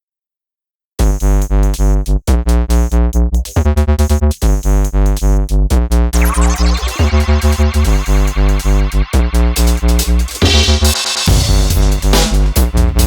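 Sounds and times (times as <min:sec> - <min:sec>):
electronic music with heavy bass beat: 0:01.0 - 0:13.0
rising synth sweep: 0:06.2 - 0:11.8.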